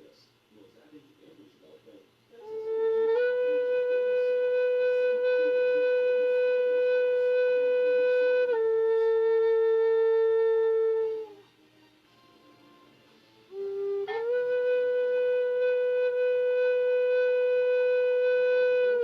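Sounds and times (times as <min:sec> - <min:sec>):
flute held note: 0:02.4 - 0:11.5, 0:13.5 - 0:19.0.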